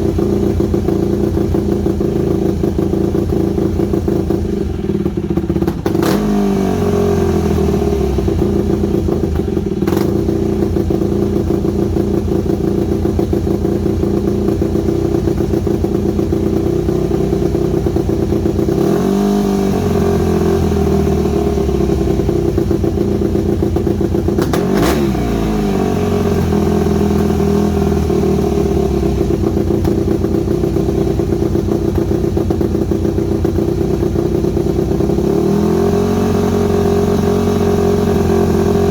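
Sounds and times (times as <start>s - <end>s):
dirt bike engine revving: 5.7s - 10.2s, 24.4s - 30.0s, 35.2s - 38.9s.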